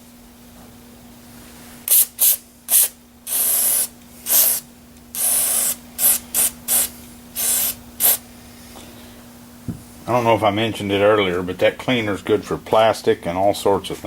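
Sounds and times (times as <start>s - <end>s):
spray cleaner hissing: 1.8s - 8.2s.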